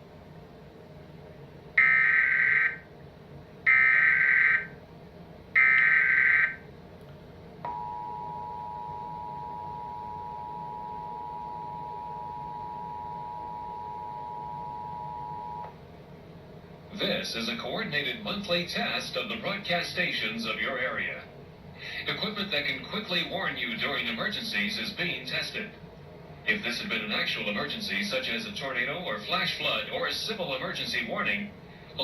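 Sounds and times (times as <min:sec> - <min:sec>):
two-tone attention signal: 0:07.7 - 0:15.7.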